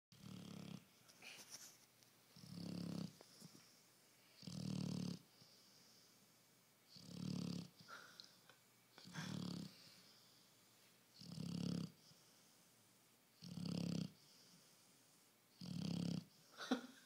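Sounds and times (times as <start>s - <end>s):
dog snoring: 0.1s - 0.9s, 2.3s - 3.2s, 4.4s - 5.7s, 6.9s - 7.8s, 9.0s - 9.8s, 11.2s - 12.4s, 13.4s - 14.6s, 15.5s - 16.4s
soft hissing breaths: 0.2s - 17.0s.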